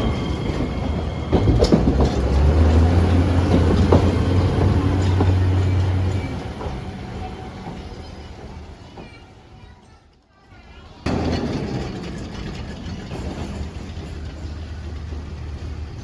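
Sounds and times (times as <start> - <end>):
train engine drone: 0.0 - 9.5, 11.1 - 16.0
wheel clicks over rail joints: 0.1 - 9.2, 11.1 - 16.0.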